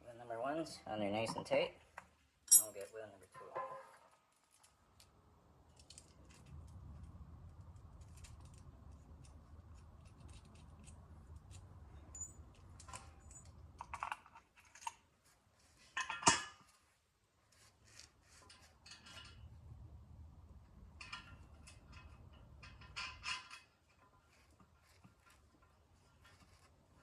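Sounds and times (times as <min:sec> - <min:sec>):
wrench and hardware clinking: 0:02.5 - 0:02.8, 0:11.5 - 0:14.9.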